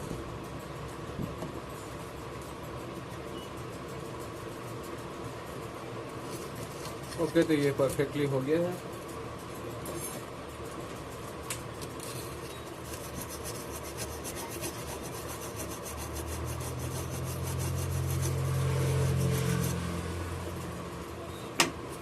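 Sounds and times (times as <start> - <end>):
rapid scraping strokes: 12.0 - 21.1
low hum: 12.9 - 21.4.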